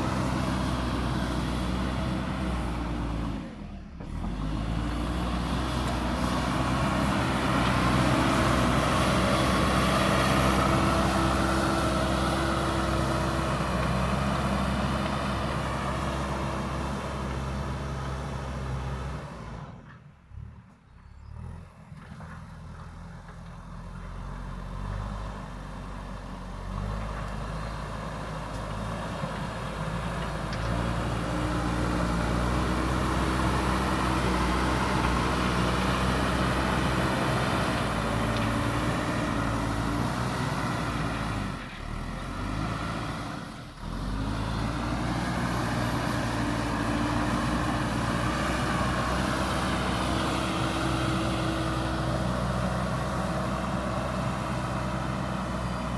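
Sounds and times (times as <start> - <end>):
diesel engine working under load: 0.0 - 55.9.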